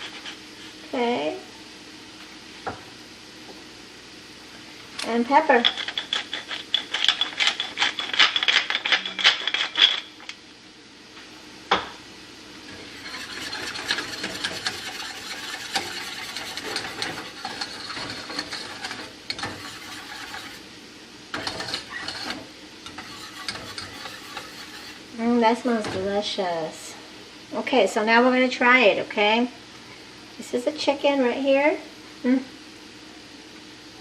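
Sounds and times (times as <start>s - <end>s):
soft scraping in a pot: 12.7s - 20.7s, 21.4s - 25.1s.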